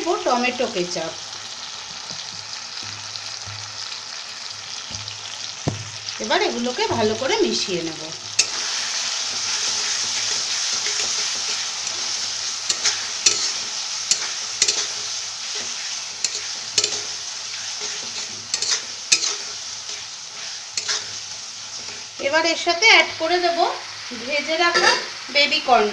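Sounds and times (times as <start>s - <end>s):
sauce sizzling in hot oil: 0.0s - 25.9s
utensil scraping against pan: 8.3s - 22.4s, 24.7s - 25.1s.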